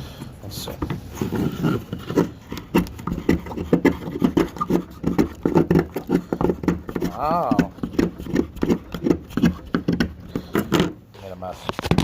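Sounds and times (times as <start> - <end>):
knife blade shaving wood: 1.4 - 10.9.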